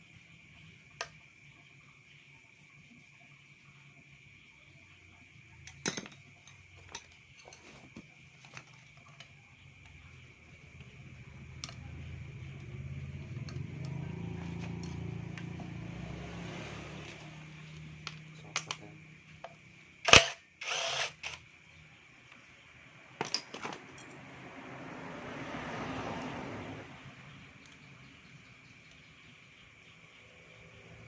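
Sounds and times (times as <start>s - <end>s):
crickets chirring: 0.0s - 31.0s
metal tools clicking and knocking: 5.6s - 7.8s, 17.1s - 18.8s, 23.2s - 24.2s.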